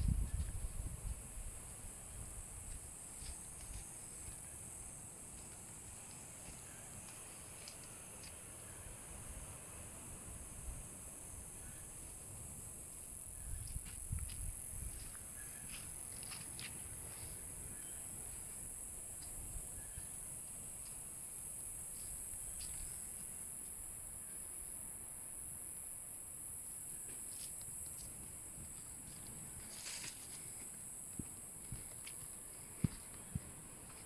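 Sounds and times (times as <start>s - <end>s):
high-pitched insect chorus: 0.0s - 34.0s.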